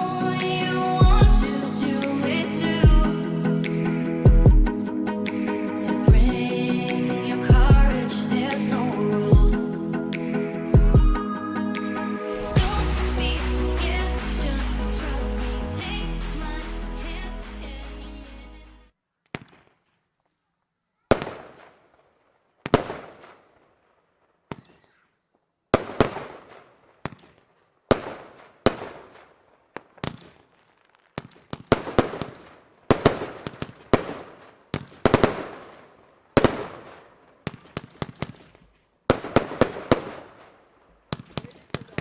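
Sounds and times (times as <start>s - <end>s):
firework battery shots: 19.3s - 19.9s, 21.1s - 22.0s, 22.6s - 23.5s, 25.8s - 29.3s, 29.9s - 42.0s.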